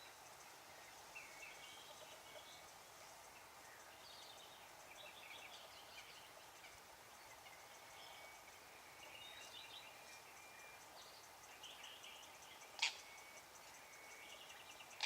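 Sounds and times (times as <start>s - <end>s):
low steady hiss: 0.0s - 15.0s
birds chirping and trilling: 3.4s - 15.0s.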